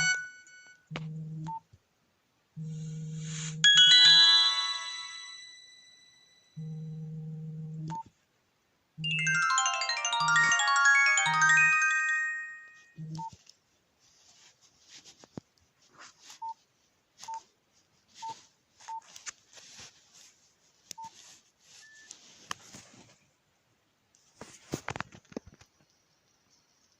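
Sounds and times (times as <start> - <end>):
phone ringtone: 0.0 - 0.8, 3.3 - 7.1, 9.0 - 13.3.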